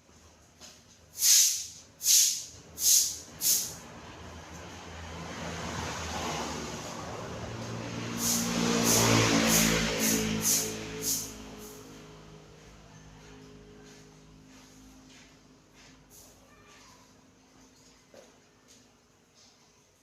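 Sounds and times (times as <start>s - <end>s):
steady hiss: 1.1s - 3.8s
hissing bursts: 1.2s - 3.8s, 8.2s - 11.3s.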